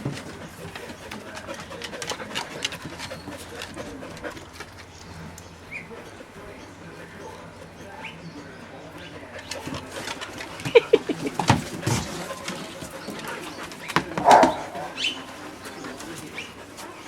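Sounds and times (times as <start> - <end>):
dogs scuffling: 9.2 - 17.0
dog yapping or growling: 14.2 - 15.2
puppy yipping: 14.2 - 15.2.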